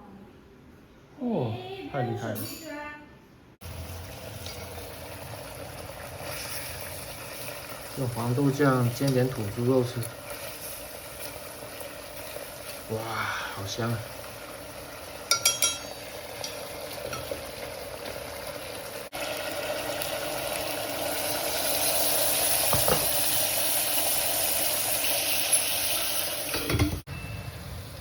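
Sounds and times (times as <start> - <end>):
meat sizzling in a pan: 3.6 - 26.8
metallic utensil clinks: 15.3 - 17.3.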